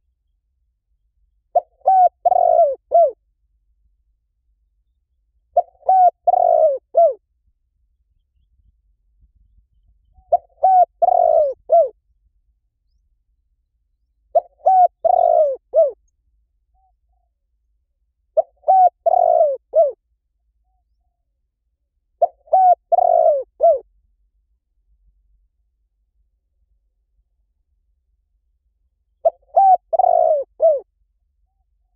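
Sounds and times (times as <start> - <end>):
dove cooing: 1.6 - 3.2, 5.6 - 7.2, 10.2 - 12.0, 14.3 - 16.0, 18.4 - 20.0, 22.2 - 23.8, 29.2 - 30.9.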